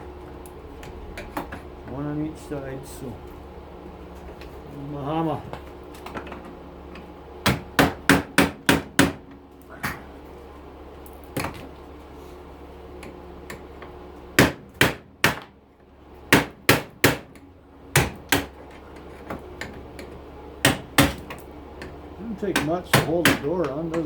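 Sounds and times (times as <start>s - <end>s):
hammer strikes: 7.4s - 9.2s, 16.3s - 17.3s, 20.6s - 21.3s, 22.5s - 24.0s.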